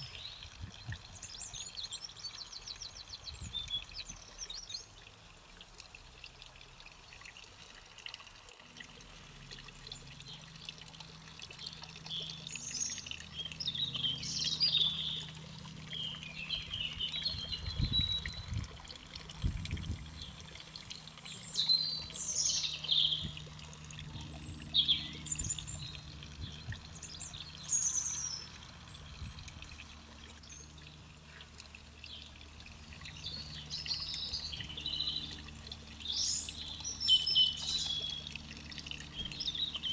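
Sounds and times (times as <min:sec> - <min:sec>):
songbirds singing: 0:00.0 - 0:05.2, 0:09.9 - 0:39.9
low steady hum: 0:00.0 - 0:39.9.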